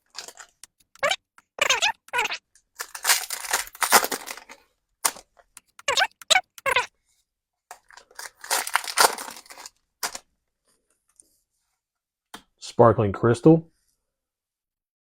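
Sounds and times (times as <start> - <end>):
foil wrapper tearing and crinkling: 1.7 - 4.4, 8.0 - 10.2.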